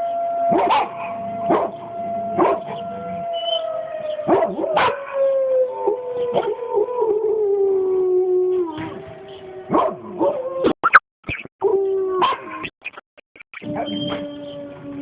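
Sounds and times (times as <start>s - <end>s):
dog howling and yipping: 0.4s - 10.7s
tornado warning siren wailing: 1.1s - 4.3s, 13.7s - 15.0s.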